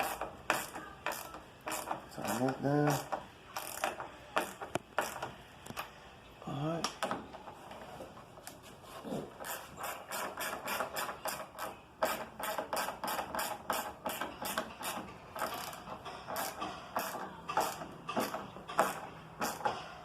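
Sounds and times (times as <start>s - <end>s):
ratchet wrench clicking: 0.0s - 5.3s, 9.4s - 19.7s.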